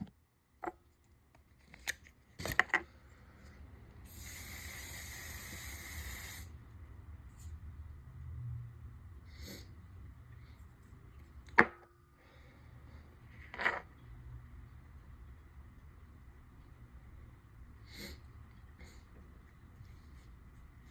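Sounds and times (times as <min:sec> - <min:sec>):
perfume spray hiss: 0:04.0 - 0:06.5.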